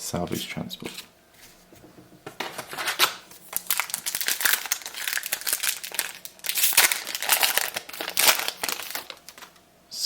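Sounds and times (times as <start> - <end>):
foil wrapper tearing and crinkling: 2.4 - 9.6.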